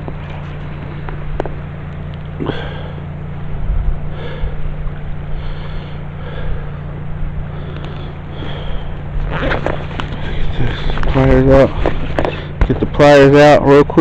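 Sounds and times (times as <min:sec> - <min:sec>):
steady low rumble: 0:00.0 - 0:14.0
person breathing: 0:02.4 - 0:03.0, 0:04.1 - 0:04.7, 0:05.3 - 0:09.0.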